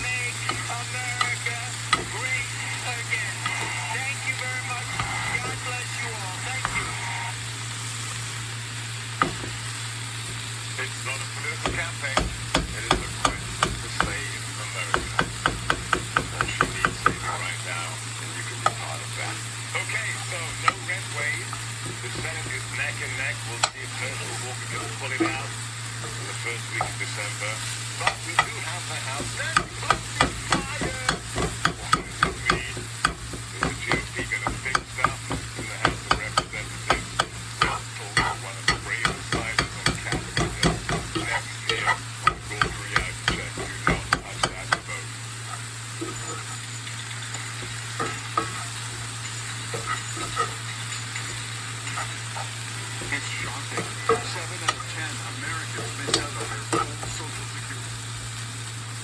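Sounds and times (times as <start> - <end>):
steady low hum: 0.0 - 58.8
meat sizzling in a frying pan: 0.0 - 59.0
utensil scraping a pan: 4.8 - 5.7, 20.5 - 46.5, 47.4 - 55.0.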